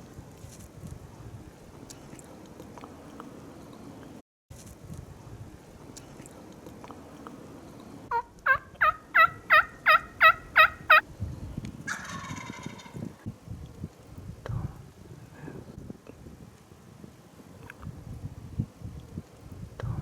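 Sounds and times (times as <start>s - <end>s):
turkey gobbling: 8.1s - 11.0s, 11.9s - 13.0s
turkey yelping: 8.1s - 11.0s.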